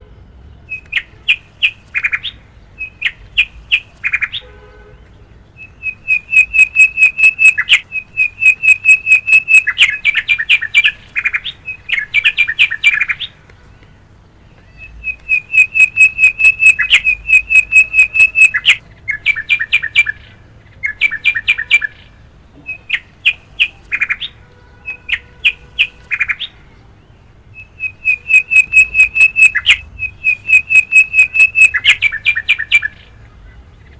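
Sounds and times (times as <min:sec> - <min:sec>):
bird chirping fast: 0:00.6 - 0:33.1.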